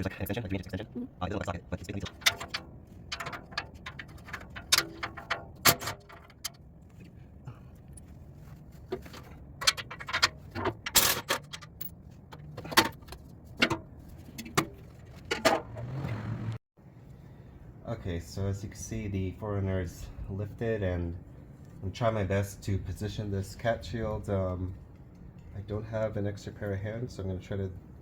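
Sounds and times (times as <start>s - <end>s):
metal tools clinking: 9.0s - 13.0s.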